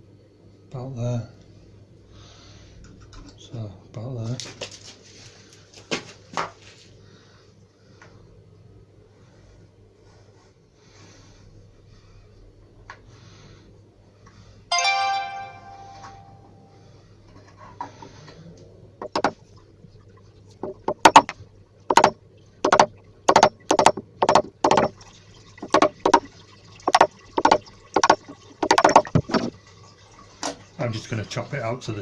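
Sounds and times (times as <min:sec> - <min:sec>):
ringing tone: 0:14.7 - 0:16.8
chisel knocks into wood: 0:19.0 - 0:19.4.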